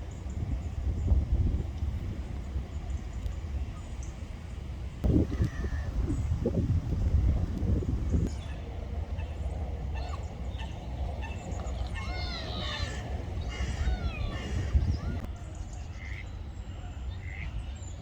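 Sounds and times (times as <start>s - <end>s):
steady low rumble: 0.0s - 18.0s
ducks calling: 8.2s - 17.8s.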